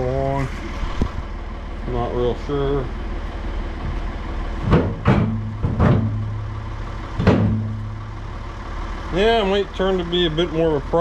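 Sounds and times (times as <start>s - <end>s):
tractor engine running: 0.0s - 11.0s
sharp metal knocks: 4.6s - 6.5s, 7.2s - 8.0s.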